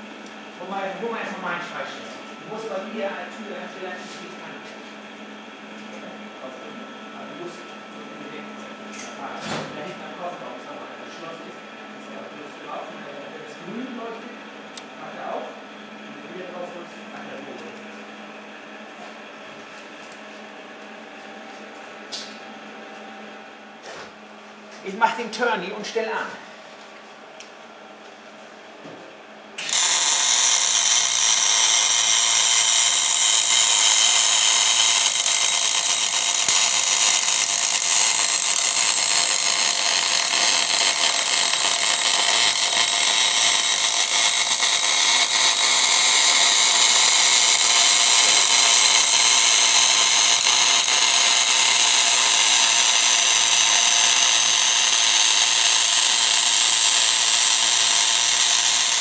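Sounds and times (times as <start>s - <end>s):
welding arc hissing: 29.6s - 59.0s.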